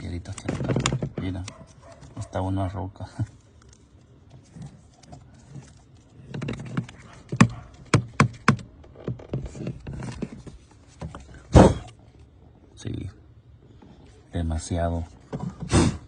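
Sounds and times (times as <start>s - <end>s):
rustling: 0.0s - 2.4s, 3.1s - 12.4s
sharp knocks or clicks: 6.6s - 9.4s.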